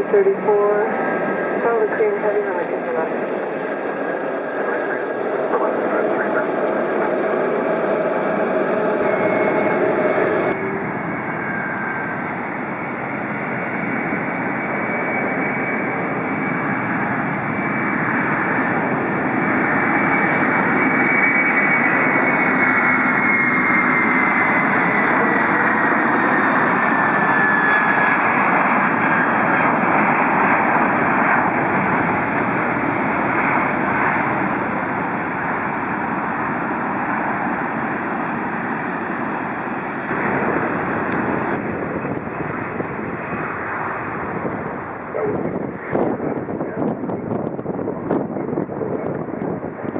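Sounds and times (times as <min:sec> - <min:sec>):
high steady tones: 0:00.0 - 0:10.6
jet airliner engines passing: 0:00.0 - 0:49.9.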